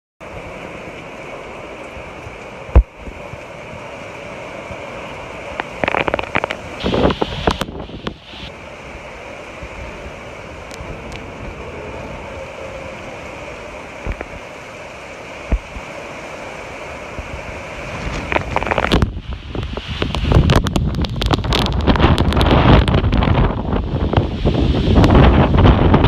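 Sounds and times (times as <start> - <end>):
strong wind blowing: 0.2 - 26.0
wind gusts buffeting microphone: 0.2 - 26.0.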